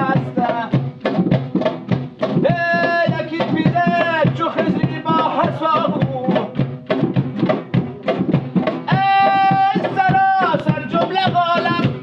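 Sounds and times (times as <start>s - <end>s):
hand drum playing quick rhythm: 0.0s - 12.0s
person singing long notes: 8.9s - 12.0s.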